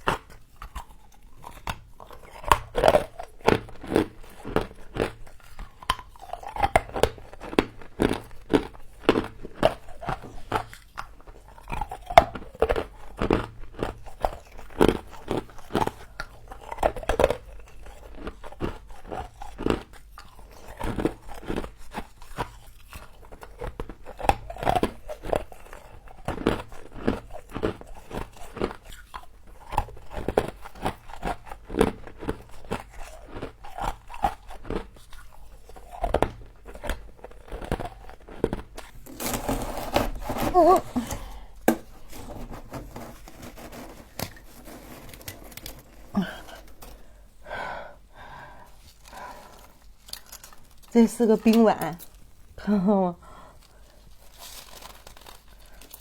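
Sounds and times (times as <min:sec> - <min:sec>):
crunching frost being chewed: 0:00.0 - 0:52.7, 0:53.3 - 0:56.0.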